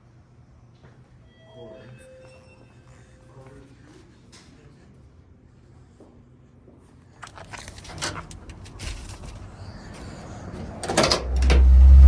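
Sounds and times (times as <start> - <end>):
keys and car door clicks: 7.2 - 9.4, 10.8 - 11.8
car engine starting and running: 7.7 - 12.0.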